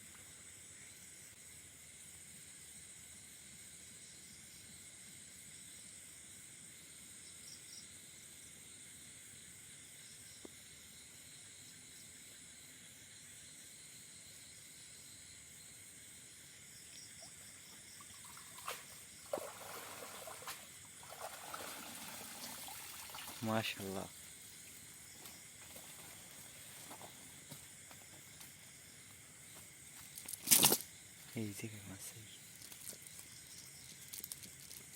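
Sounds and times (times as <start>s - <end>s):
insects chirring: 0.0s - 34.9s
water splashing and dripping: 17.7s - 24.0s.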